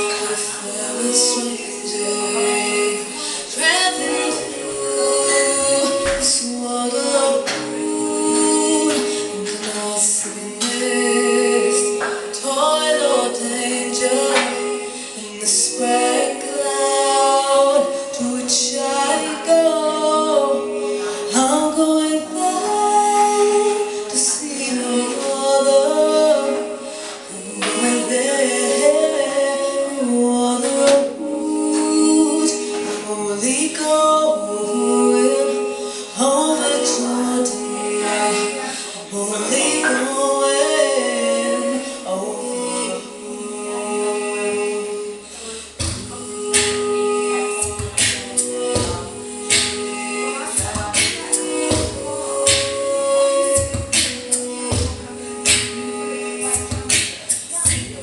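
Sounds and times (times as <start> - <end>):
instrumental accompaniment: 0.0 - 58.0
woman singing: 0.0 - 58.0
steady percussive strokes: 44.6 - 58.0.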